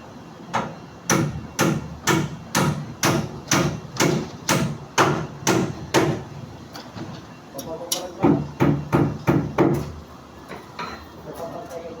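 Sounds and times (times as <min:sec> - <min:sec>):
hammer blows ringing: 0:01.1 - 0:06.2, 0:08.2 - 0:09.8.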